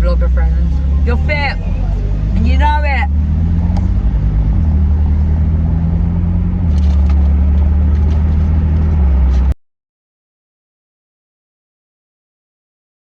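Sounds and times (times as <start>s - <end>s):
car engine drone: 0.0s - 9.6s
road noise: 0.0s - 9.6s.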